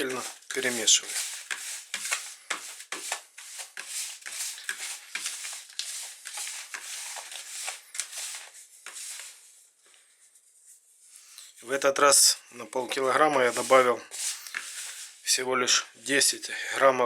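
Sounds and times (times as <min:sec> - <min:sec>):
dry mix stirred in a bowl: 0:00.0 - 0:09.6, 0:12.6 - 0:15.4.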